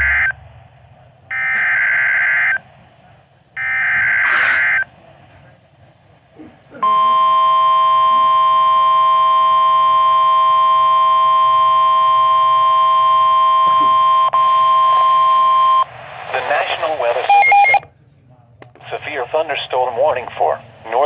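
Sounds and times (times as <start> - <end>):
loud steady electronic alarm tone: 0.0 - 0.4, 3.6 - 4.8, 17.3 - 17.8.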